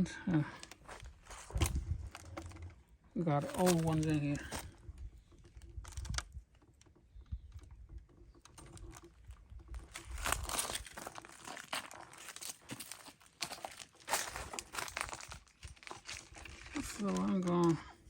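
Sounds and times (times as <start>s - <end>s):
crinkling and rustling with clicks: 0.4s - 18.0s.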